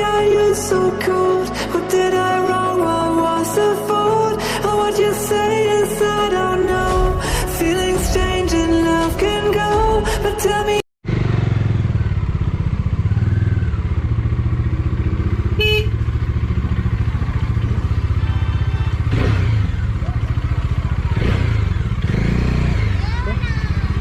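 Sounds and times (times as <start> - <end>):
motorcycle engine running: 11.0 - 24.0.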